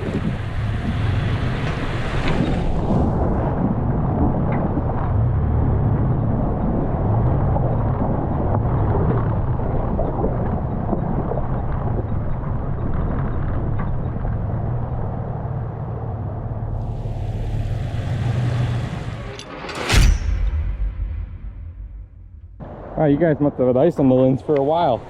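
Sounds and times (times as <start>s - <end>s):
wind on microphone: 0.0s - 15.2s
engine low rumble: 0.0s - 25.0s.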